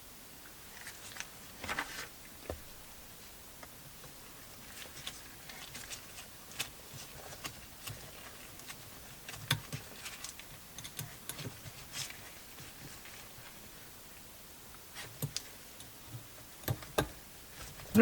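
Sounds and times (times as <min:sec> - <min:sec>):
small tools clicking and tapping: 0:08.6 - 0:11.6, 0:16.6 - 0:17.2.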